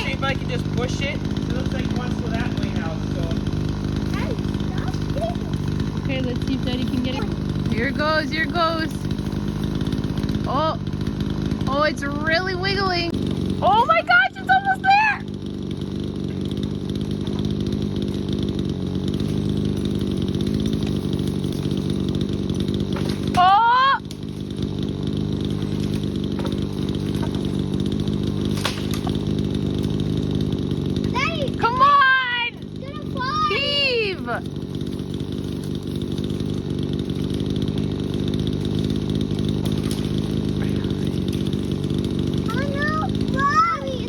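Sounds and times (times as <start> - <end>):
chainsaw engine idling: 0.0 - 44.0.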